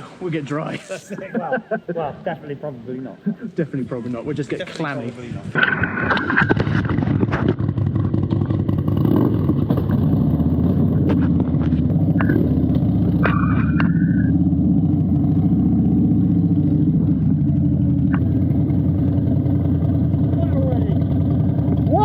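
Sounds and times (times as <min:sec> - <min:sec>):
motorcycle engine rumbling: 0:04.4 - 0:22.0.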